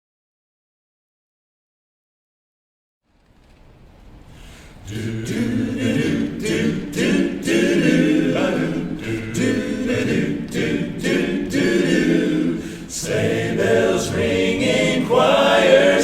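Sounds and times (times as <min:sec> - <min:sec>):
men singing in close harmony: 0:04.8 - 0:16.0.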